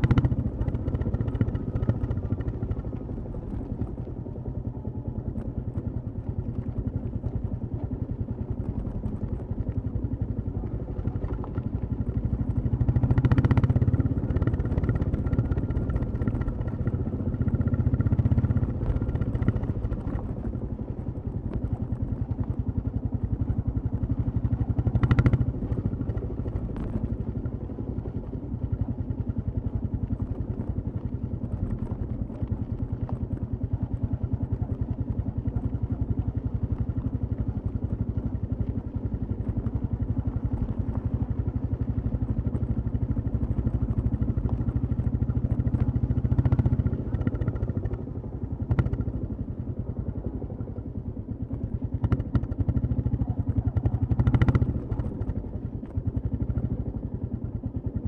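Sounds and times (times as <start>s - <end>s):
motorcycle engine and exhaust: 0.0s - 58.0s.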